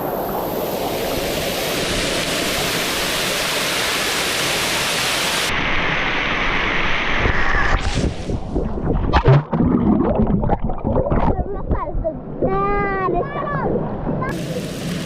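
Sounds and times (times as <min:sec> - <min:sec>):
falling and splashing water: 0:00.0 - 0:11.4.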